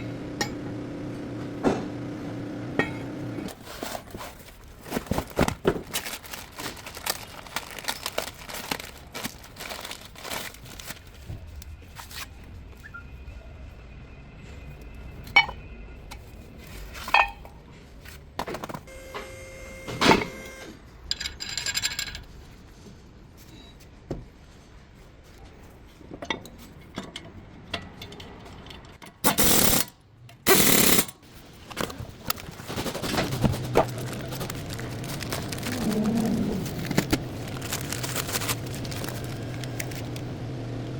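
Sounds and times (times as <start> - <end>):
metal tools clinking and knocking: 21.1 - 22.4.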